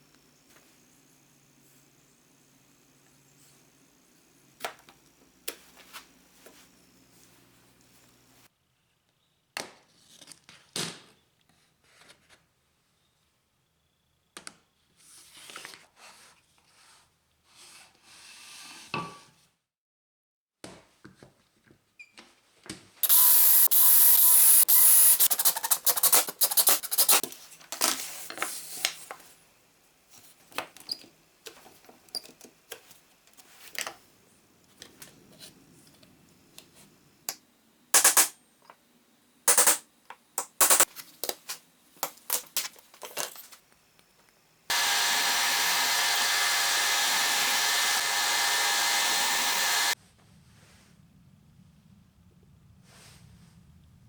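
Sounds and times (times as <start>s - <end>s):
power tool working wood: 23.0s - 26.1s, 44.7s - 50.0s
knocks and clicks of parts: 39.5s - 40.9s.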